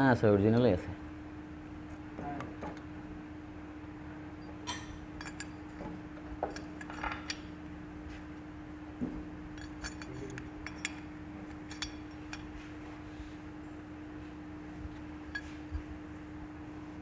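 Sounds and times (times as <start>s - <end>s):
steady low hum: 0.0s - 17.0s
metal parts and tools clinking: 4.5s - 7.6s, 9.5s - 12.7s, 15.3s - 15.8s.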